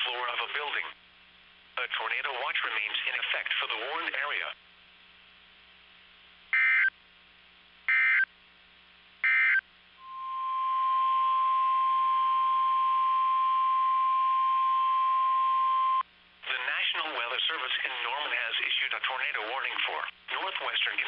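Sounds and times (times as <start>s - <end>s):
data tone bursts: 9.2s - 16.0s
steady warning alarm tone: 9.2s - 16.0s.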